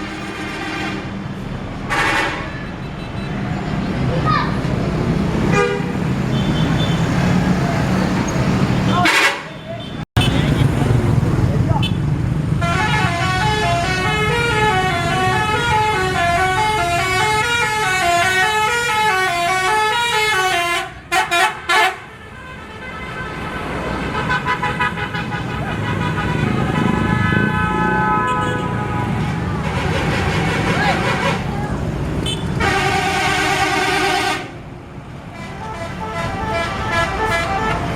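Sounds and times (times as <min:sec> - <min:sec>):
musical bus air horn tune: 0:01.9 - 0:02.6, 0:09.0 - 0:09.5, 0:12.6 - 0:23.4, 0:24.1 - 0:31.5, 0:32.3 - 0:34.6, 0:35.3 - 0:37.9.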